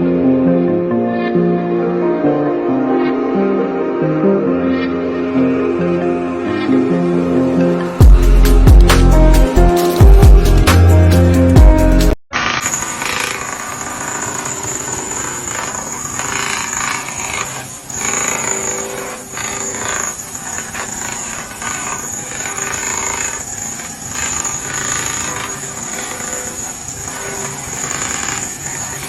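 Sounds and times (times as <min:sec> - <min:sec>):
machine grinding: 0:00.2 - 0:29.0.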